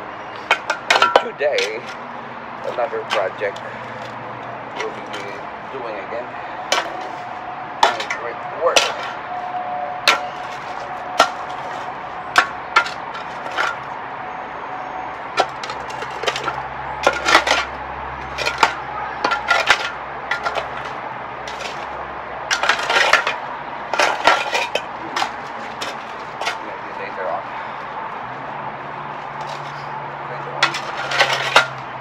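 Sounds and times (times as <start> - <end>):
hand tools knocking on concrete: 0.4 - 2.0, 6.7 - 7.2, 7.8 - 9.2, 10.1 - 13.9, 15.4 - 21.9, 30.6 - 31.8.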